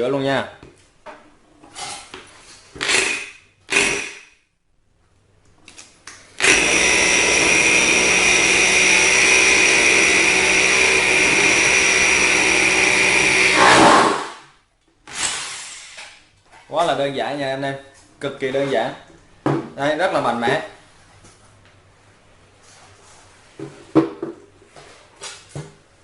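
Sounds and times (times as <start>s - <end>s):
rotary hammer drilling into concrete: 2.8s - 4.3s, 6.4s - 14.4s.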